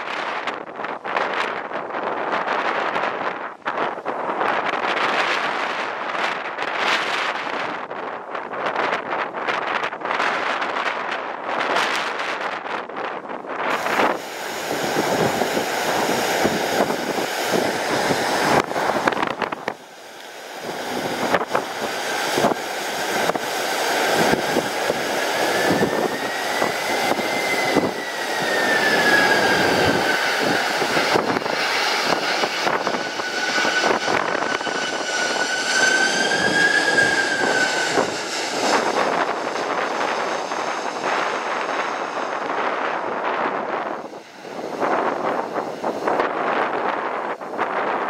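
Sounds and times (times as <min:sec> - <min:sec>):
wind buffeting microphone: 0:00.0 - 0:48.0
jet engines whining: 0:13.6 - 0:48.0.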